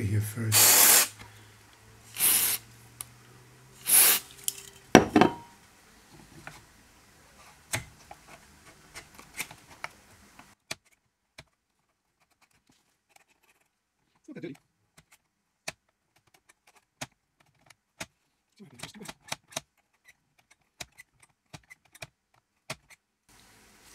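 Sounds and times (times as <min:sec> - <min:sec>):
aerosol can hissing: 0:00.5 - 0:01.2, 0:02.1 - 0:02.7, 0:03.8 - 0:04.6.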